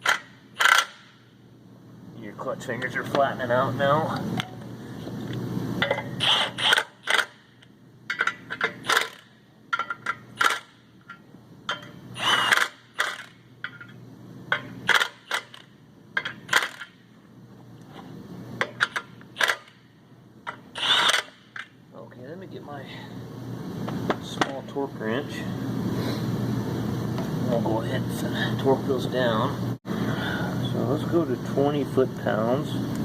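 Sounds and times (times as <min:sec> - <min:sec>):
hand ratchet clicking: 0:00.0 - 0:01.0, 0:06.2 - 0:07.4, 0:08.1 - 0:10.7, 0:11.7 - 0:13.4, 0:18.8 - 0:19.8, 0:20.5 - 0:21.6.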